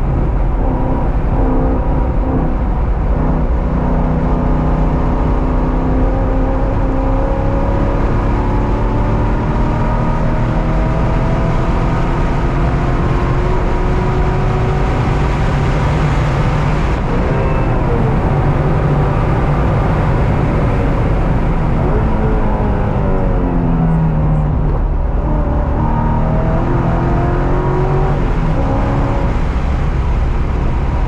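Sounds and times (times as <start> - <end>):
car engine accelerating: 0.0 - 31.0
road and wind noise: 0.0 - 31.0.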